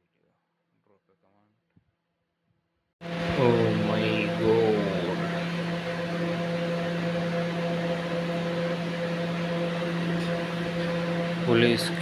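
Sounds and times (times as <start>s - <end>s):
droning hum with tones: 3.0s - 12.0s.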